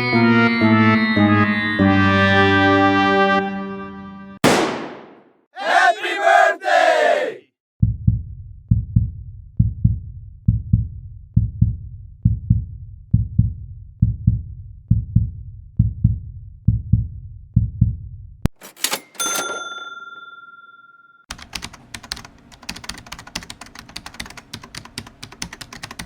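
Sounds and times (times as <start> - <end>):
voices shouting: 5.6 - 7.5
heartbeat thumps: 7.8 - 18.1.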